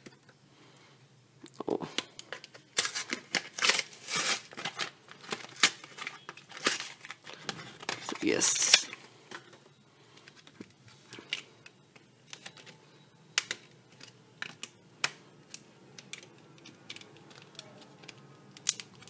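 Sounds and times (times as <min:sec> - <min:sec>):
plastic packaging clicks and taps: 0:13.4 - 0:19.0.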